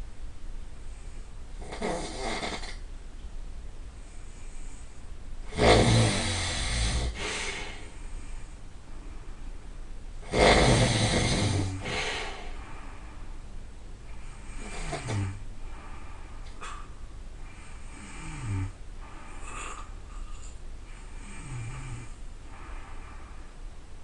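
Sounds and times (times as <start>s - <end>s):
person snoring: 1.6s - 2.8s, 5.5s - 7.9s, 10.2s - 12.6s, 14.3s - 15.4s, 17.8s - 20.5s, 21.2s - 22.2s.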